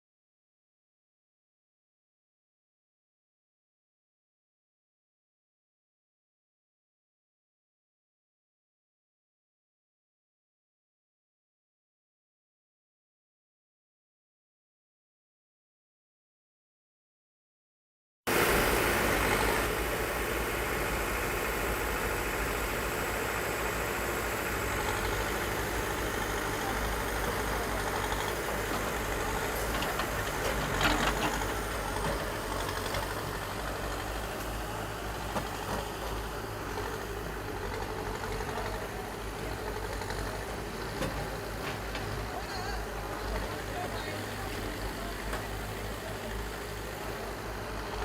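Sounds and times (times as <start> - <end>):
bulldozer diesel engine running: 18.3 - 48.0.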